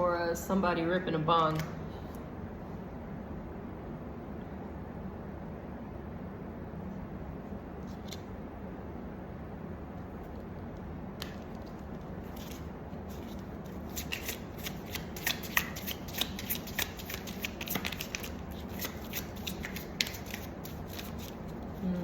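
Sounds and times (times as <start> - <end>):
low room hum: 0.0 - 22.0
cards being shuffled: 11.2 - 21.9.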